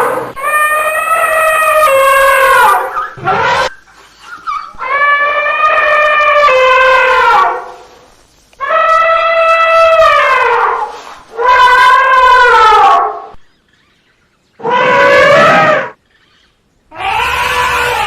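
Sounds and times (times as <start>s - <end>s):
elephant trumpeting: 0.0s - 3.8s, 8.6s - 13.3s, 14.6s - 16.0s, 16.9s - 18.0s.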